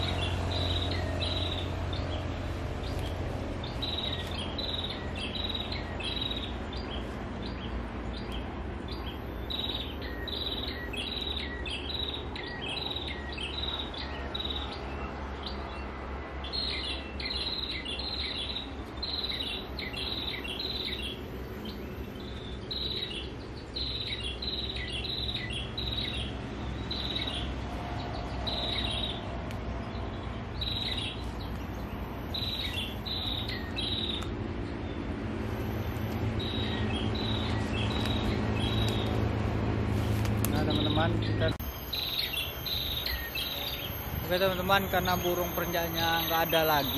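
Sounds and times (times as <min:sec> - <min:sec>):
road traffic rumble: 0:00.0 - 0:46.9
bird call short sharp chirps: 0:40.5 - 0:46.9
thin high insect whine: 0:41.6 - 0:46.9.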